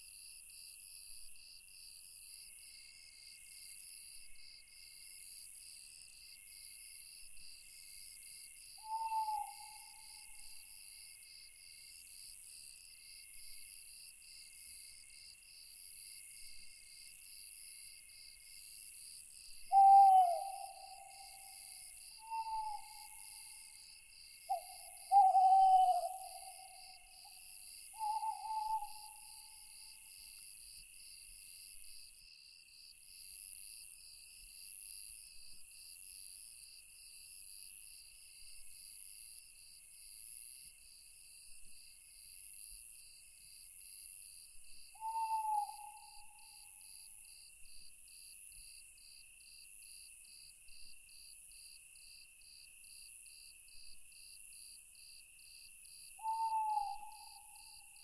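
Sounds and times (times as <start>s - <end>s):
crickets and insects chirping: 2.7s - 32.9s, 42.6s - 58.0s
owl hooting: 8.8s - 10.1s, 19.7s - 23.4s, 24.5s - 27.1s, 28.0s - 29.6s, 45.0s - 46.6s, 56.2s - 57.8s.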